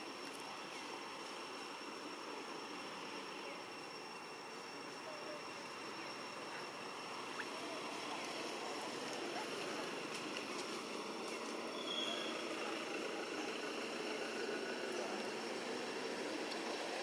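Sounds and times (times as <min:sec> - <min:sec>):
faint steady high tones: 0:00.4 - 0:10.1.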